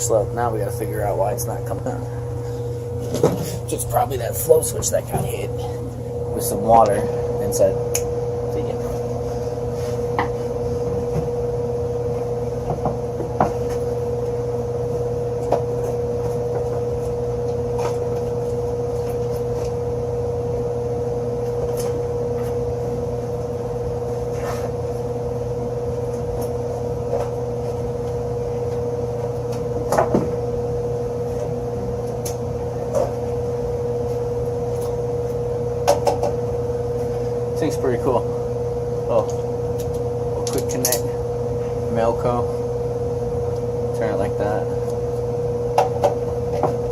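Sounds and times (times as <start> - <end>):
electrical machine hum: 0.0 - 46.9.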